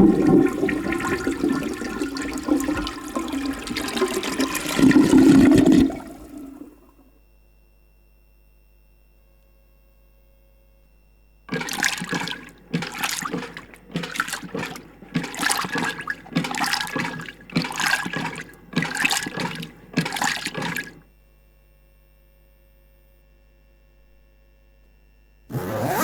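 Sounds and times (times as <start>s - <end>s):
bursts of water noise: 0.0s - 6.8s, 11.5s - 21.0s.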